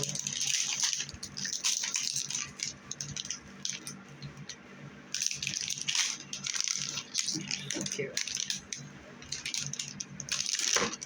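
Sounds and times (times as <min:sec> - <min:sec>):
packaging rustling and rattling: 0:00.0 - 0:11.0.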